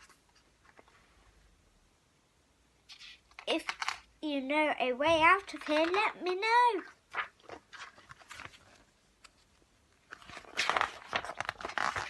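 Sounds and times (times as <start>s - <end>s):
paper pages rustling: 2.9s - 4.0s, 5.1s - 12.0s.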